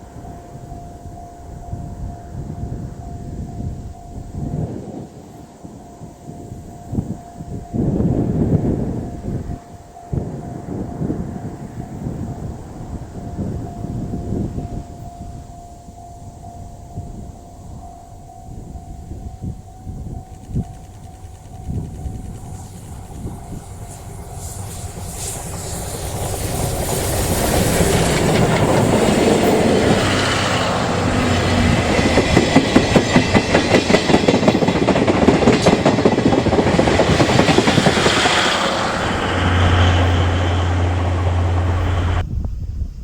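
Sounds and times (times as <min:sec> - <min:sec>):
steam train passing: 0:00.0 - 0:42.3
wheels clattering over rail joints: 0:20.2 - 0:42.2.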